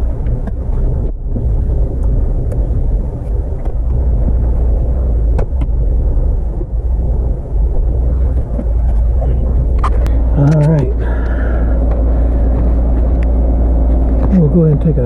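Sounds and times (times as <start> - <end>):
van engine idling: 0.0 - 15.0.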